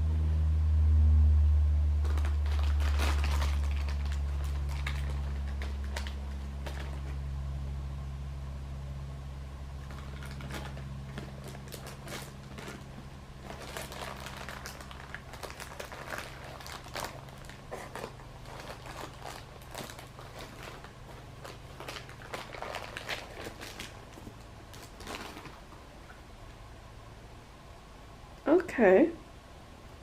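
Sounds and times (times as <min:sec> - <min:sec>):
low hum: 0:00.0 - 0:30.0
plastic packaging crinkling: 0:02.0 - 0:07.3, 0:09.8 - 0:26.0.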